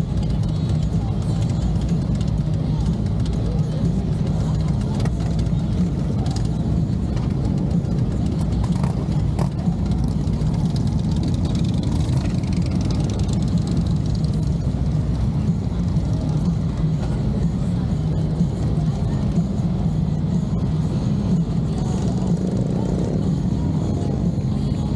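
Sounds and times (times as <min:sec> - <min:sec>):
motorcycle engines running: 0:00.0 - 0:24.9.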